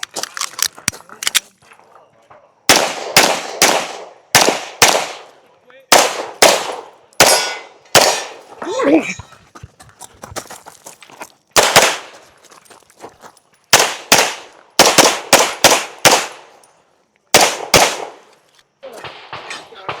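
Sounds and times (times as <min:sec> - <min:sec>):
clicks and scuffs of movement: 0:00.0 - 0:02.1, 0:08.4 - 0:13.7
handgun shots: 0:02.7 - 0:05.3, 0:05.9 - 0:08.4, 0:11.6 - 0:12.1, 0:13.7 - 0:16.5, 0:17.4 - 0:18.2.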